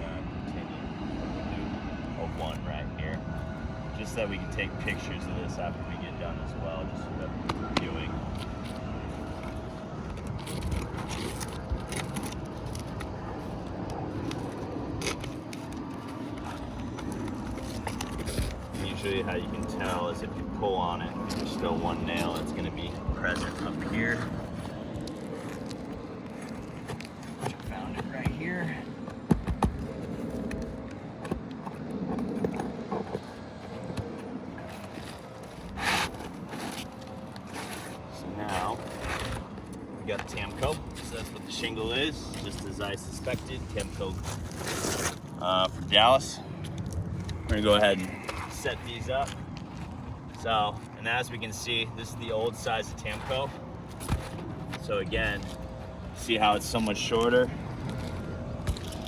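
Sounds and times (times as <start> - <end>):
roof shingles being scraped: 8.5 - 20.4, 21.1 - 46.0.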